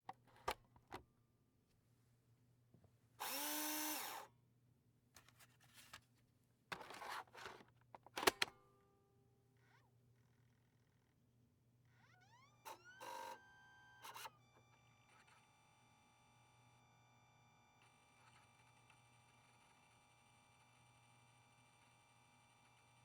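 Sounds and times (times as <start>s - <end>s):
disk drive motor whirring: 3.2s - 4.2s, 12.0s - 23.0s.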